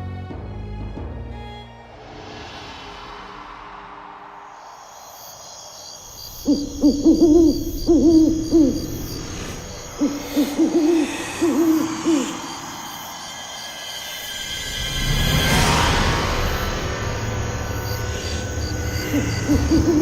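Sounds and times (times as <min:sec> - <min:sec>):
owl hooting: 0:06.0 - 0:14.1, 0:18.2 - 0:20.0.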